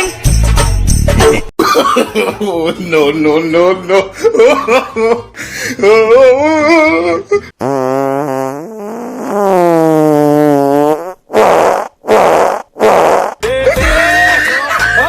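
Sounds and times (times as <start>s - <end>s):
farting: 7.6s - 13.4s.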